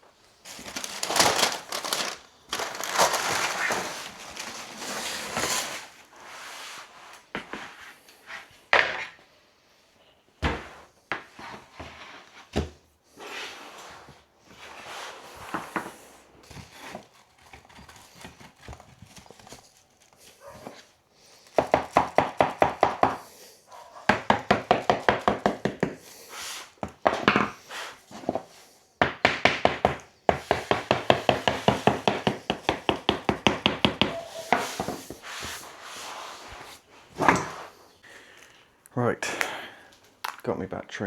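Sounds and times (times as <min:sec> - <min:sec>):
flooring boards being knocked: 0:29.0 - 0:34.2.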